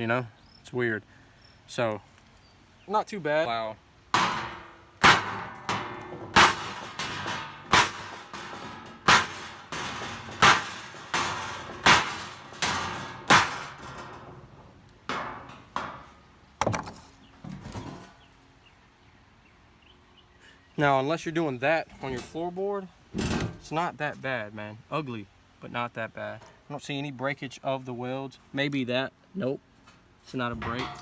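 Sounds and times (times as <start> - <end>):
hammer clanging on metal: 4.2 - 18.2, 30.5 - 31.0.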